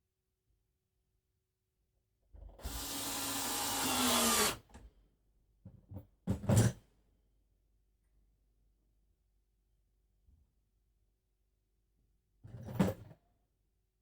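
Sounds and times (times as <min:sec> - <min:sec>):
power drill running: 0:02.6 - 0:04.6.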